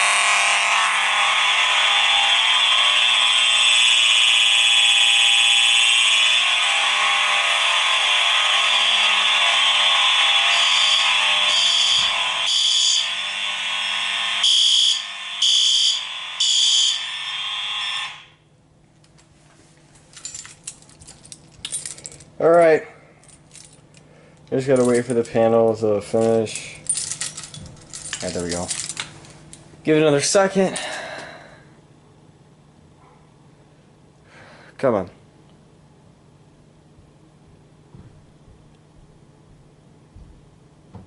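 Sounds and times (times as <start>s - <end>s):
alarm horn short pulses: 0.0s - 18.4s
fire alarm horns blaring: 0.0s - 18.6s, 23.3s - 29.2s.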